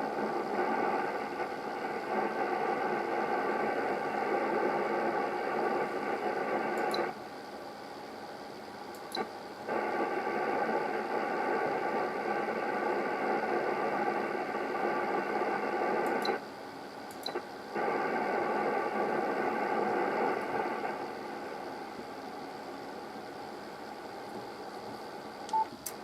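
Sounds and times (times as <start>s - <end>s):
radio receiver hiss: 0.0s - 7.2s, 9.0s - 26.0s.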